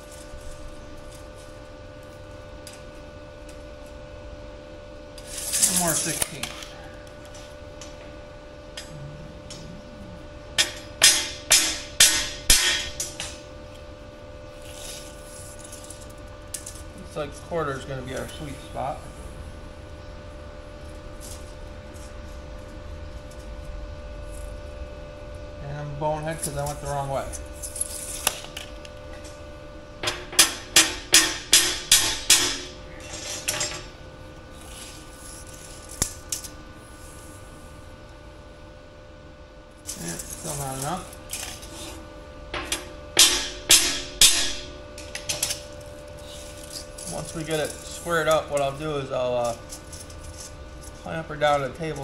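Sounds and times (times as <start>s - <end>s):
hammer striking steel rebar: 10.6s - 13.0s, 43.2s - 44.6s.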